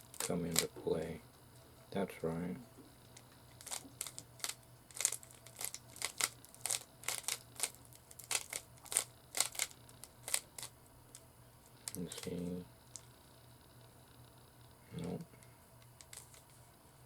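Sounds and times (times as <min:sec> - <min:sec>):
plastic puzzle cube clicking: 0:03.6 - 0:10.7.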